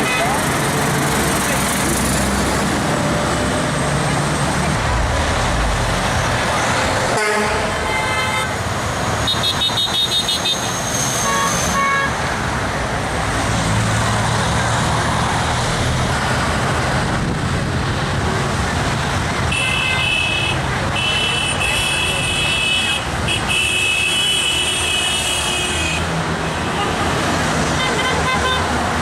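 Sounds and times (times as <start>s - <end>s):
car and truck horns honking: 0.0s - 0.5s, 6.5s - 12.3s, 19.5s - 28.9s
passing road traffic: 0.0s - 29.0s.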